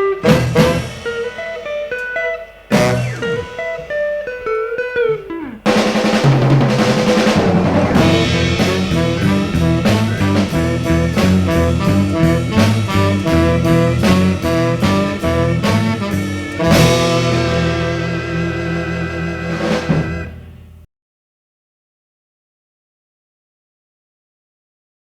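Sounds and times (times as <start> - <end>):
bass guitar line: 0.0 - 20.8
beat band playing: 0.0 - 20.8
drum kit hits: 0.0 - 20.8.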